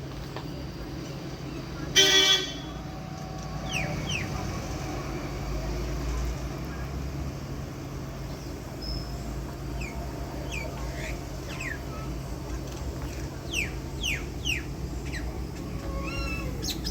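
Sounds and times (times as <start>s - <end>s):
bird calling with falling notes: 13.5s - 16.9s.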